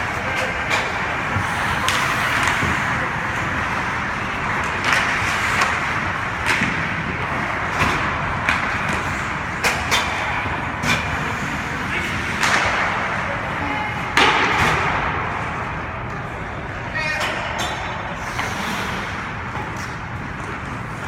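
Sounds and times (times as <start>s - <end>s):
hockey sticks and puck clacking: 0.0s - 21.0s
skates scraping on ice: 0.1s - 12.8s, 18.2s - 21.0s.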